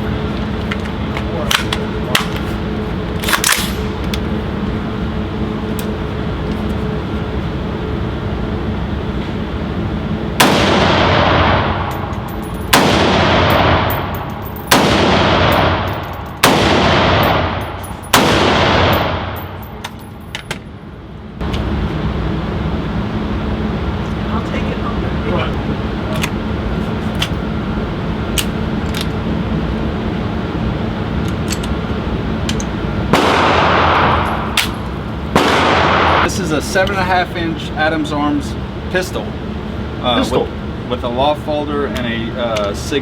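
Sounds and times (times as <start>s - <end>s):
steady background noise: 0.0s - 43.0s
gunshots ringing: 10.4s - 12.0s, 12.7s - 19.6s, 33.1s - 36.4s.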